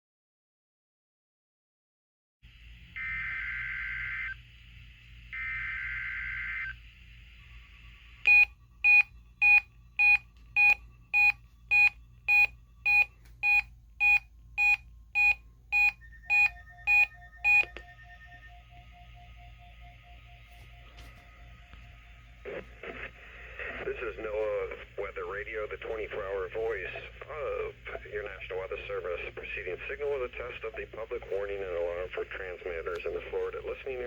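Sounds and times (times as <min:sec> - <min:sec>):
buzzy two-tone digital data bursts: 0:05.4 - 0:08.2
alert radio beeping: 0:08.3 - 0:20.6.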